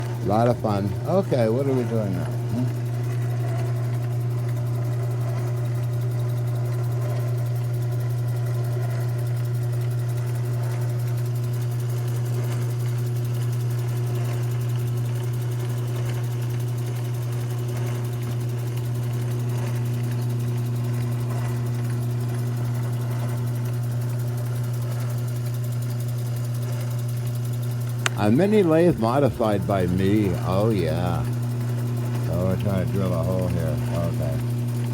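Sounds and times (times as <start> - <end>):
higher hum: 0.0 - 3.0, 27.8 - 34.9
lathe motor hum: 0.0 - 34.9.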